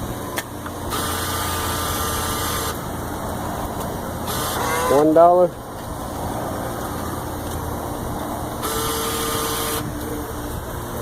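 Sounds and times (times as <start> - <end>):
low machine hum: 0.0 - 11.0
bill acceptor motor whirring: 0.9 - 2.8, 8.6 - 10.2.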